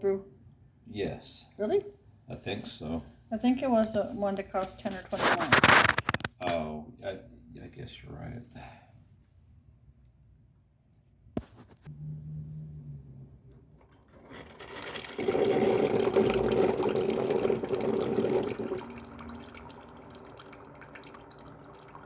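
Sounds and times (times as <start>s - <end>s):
water rushing through coffee maker: 13.8s - 22.0s.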